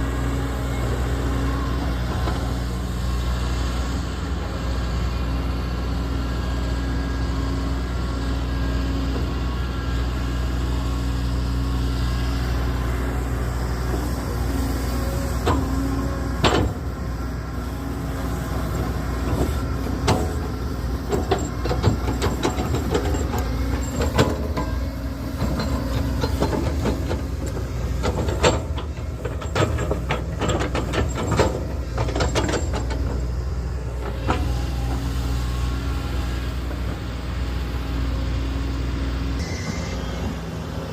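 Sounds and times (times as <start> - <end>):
diesel engine running: 0.0 - 40.9
metal knocks and clanks: 19.3 - 33.4.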